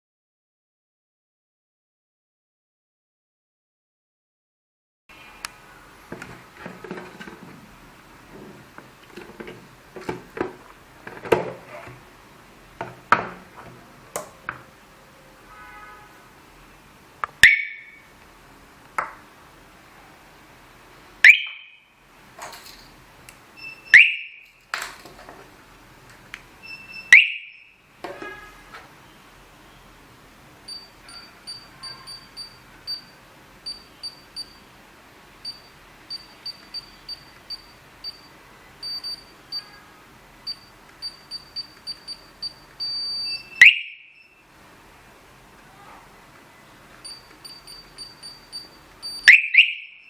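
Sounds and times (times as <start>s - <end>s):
siren rising chirps: 21.2s - 21.8s, 42.4s - 44.4s, 47.1s - 50.0s
short high-pitched beeps: 23.6s - 24.4s, 26.6s - 27.8s, 30.7s - 34.7s, 35.4s - 39.7s, 40.4s - 44.4s, 47.0s - 50.0s.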